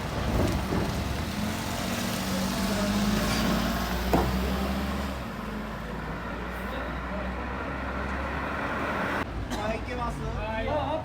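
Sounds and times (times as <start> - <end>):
vehicle engine humming: 0.0 - 9.4.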